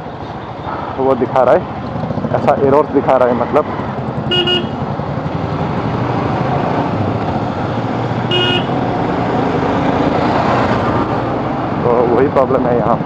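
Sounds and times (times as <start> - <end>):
motorcycle riding: 0.0 - 13.0
road and traffic noise: 0.0 - 13.0
short vehicle horn beep: 4.3 - 4.8, 8.3 - 8.7.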